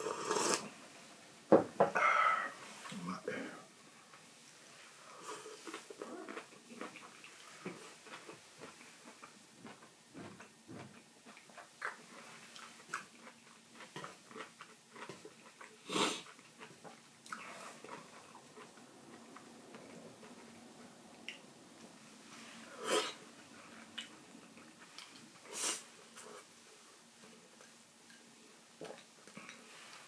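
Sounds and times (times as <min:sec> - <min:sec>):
breathy noise: 0:01.9 - 0:03.7
person chewing: 0:05.3 - 0:21.4, 0:22.8 - 0:26.5.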